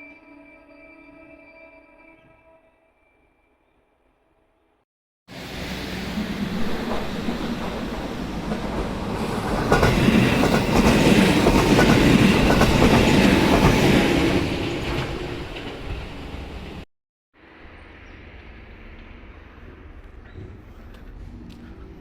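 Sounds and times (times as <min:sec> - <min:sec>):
electric train passing: 0:05.3 - 0:16.8, 0:17.4 - 0:22.0.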